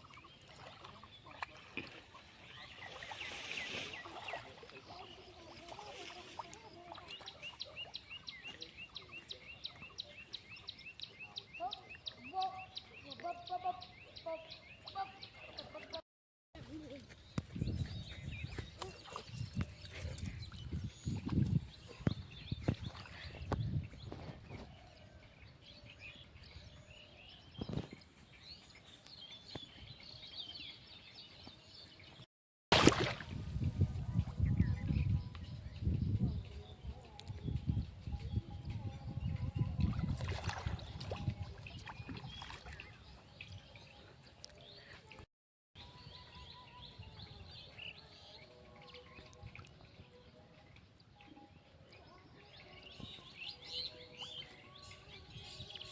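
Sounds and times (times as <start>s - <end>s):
small birds chirping: 0.0s - 16.0s.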